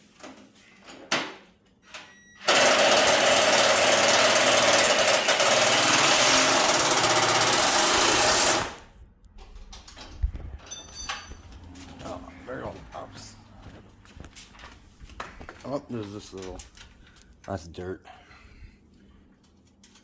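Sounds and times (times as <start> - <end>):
power tool running: 2.4 - 8.8.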